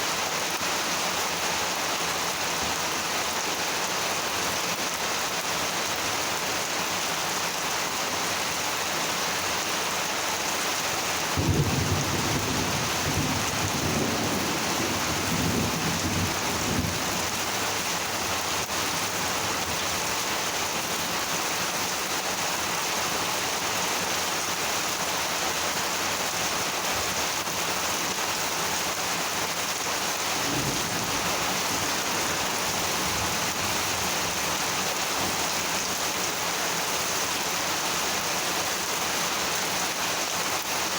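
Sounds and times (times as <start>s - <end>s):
steady rain: 0.0s - 40.9s
thunder rumbling: 11.4s - 17.3s, 30.3s - 34.2s.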